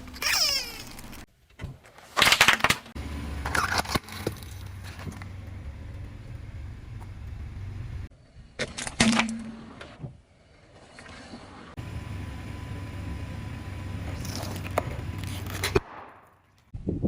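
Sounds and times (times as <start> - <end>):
car engine running low: 3.0 - 8.1, 11.8 - 15.8
objects crunching under car tyre: 14.1 - 16.6.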